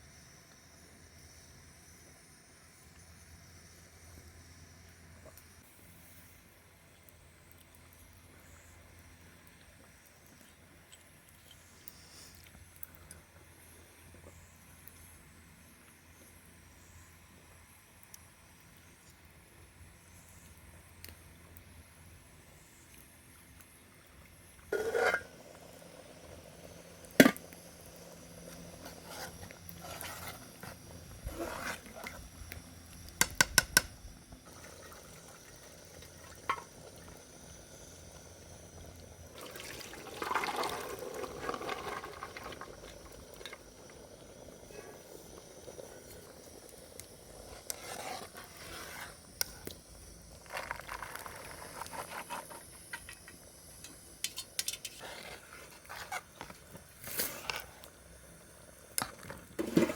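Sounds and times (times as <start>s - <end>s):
liquid moving in a pot: 24.7s - 33.0s, 34.4s - 53.4s, 54.2s - 57.9s
metal utensils clinking on pots: 54.2s - 55.0s.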